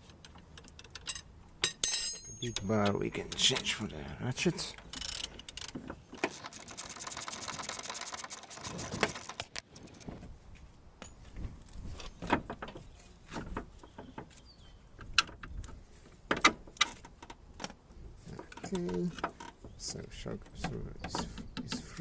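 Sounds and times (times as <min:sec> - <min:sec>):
metallic clinks of tools: 0:01.6 - 0:02.8, 0:06.2 - 0:10.1
socket ratchet clicking: 0:06.2 - 0:10.1.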